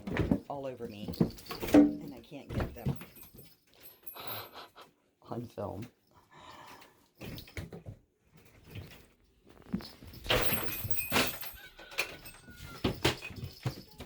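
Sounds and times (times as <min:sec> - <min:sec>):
monkeys scrambling knocks and thumps: 0:00.0 - 0:03.6, 0:07.2 - 0:14.0.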